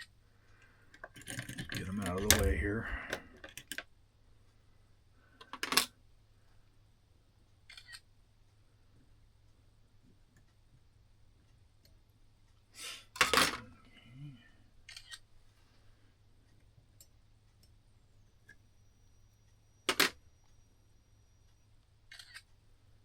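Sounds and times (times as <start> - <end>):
small metal parts clinking: 1.0 - 2.5.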